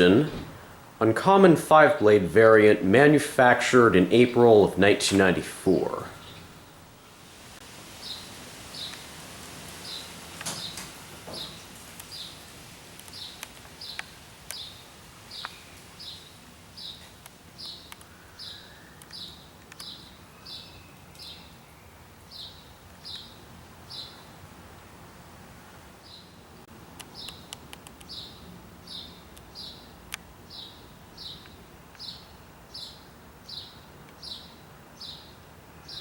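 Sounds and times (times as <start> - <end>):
sharp clicks: 17.2 - 18.1, 19.0 - 20.0, 27.0 - 28.2.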